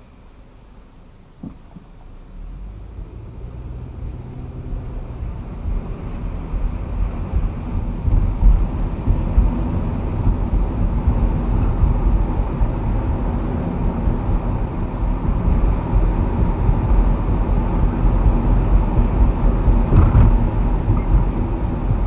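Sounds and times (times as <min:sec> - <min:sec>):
car engine and road rumble: 0:00.0 - 0:22.0
thump: 0:01.4 - 0:01.9.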